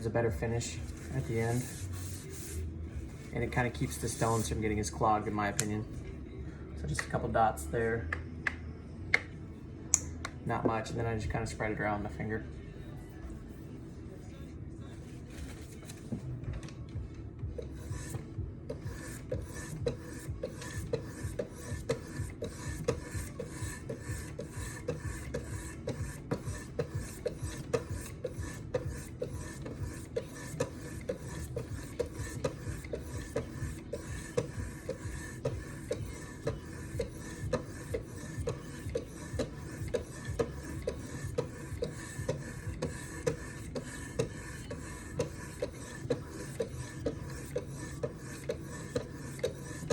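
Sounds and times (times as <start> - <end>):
sharpening stone rasping on knife: 18.8 - 49.9.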